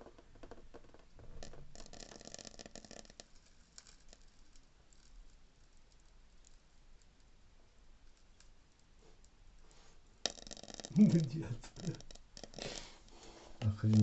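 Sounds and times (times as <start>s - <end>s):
heating element crackling and sizzling: 10.3s - 14.0s.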